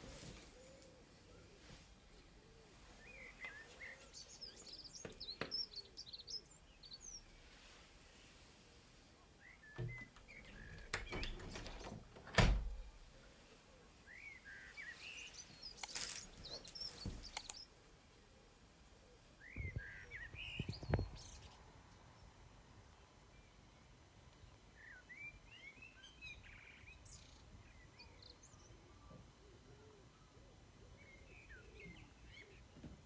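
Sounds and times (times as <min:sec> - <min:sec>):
small birds chirping: 0:00.0 - 0:08.4, 0:09.3 - 0:12.2, 0:12.9 - 0:33.0.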